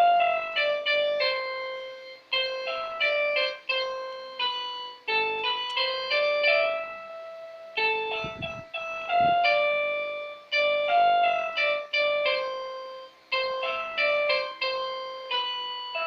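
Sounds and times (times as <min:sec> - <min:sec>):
piano-toned keyboard melody: 0:00.0 - 0:16.0.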